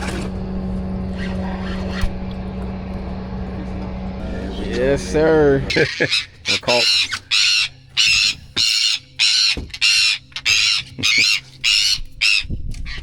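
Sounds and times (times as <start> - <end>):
bird making rough cries: 5.7 - 13.0.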